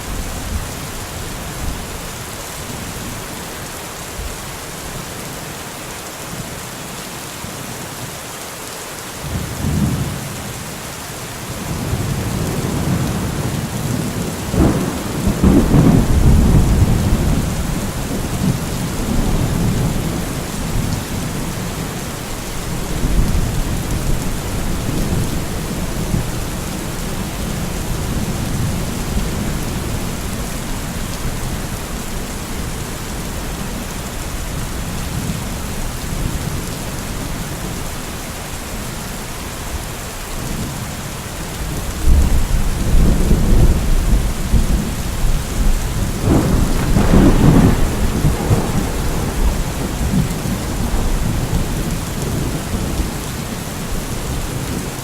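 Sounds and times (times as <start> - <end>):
steady rain: 0.0 - 55.0
thunder rumbling: 11.7 - 31.6, 42.0 - 54.9
thunder crack: 46.2 - 52.4.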